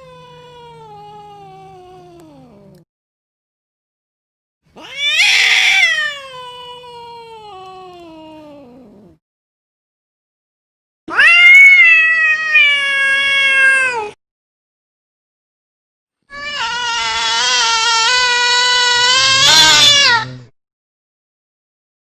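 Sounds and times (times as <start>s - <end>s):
cat meowing: 4.8s - 8.9s, 11.1s - 14.2s, 16.3s - 20.4s.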